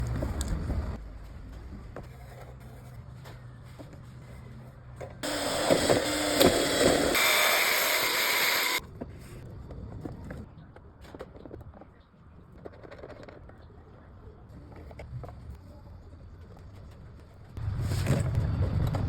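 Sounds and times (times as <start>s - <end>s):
small motor running: 5.2s - 8.8s.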